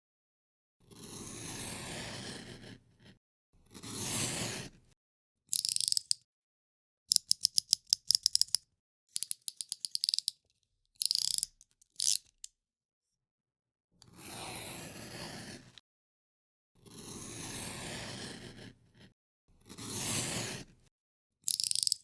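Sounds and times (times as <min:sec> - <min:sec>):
utility knife blade ratcheting clicks: 0:05.5 - 0:06.2, 0:07.1 - 0:08.6, 0:09.2 - 0:10.4, 0:11.0 - 0:12.5, 0:21.5 - 0:22.0.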